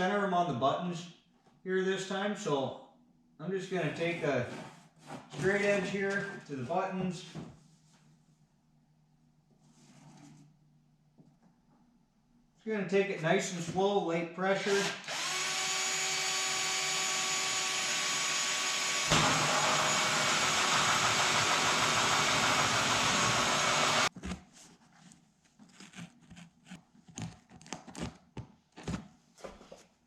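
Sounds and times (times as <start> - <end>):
power tool motor cutting: 14.7 - 24.1.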